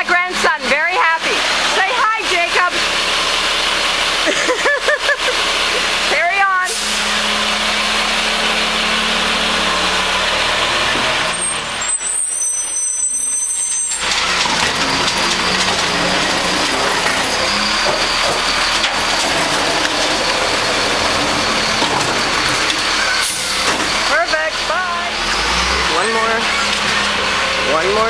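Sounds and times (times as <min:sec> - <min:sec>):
garbage truck engine and hydraulics: 0:00.0 - 0:28.0
high whistling squeal: 0:11.1 - 0:14.4.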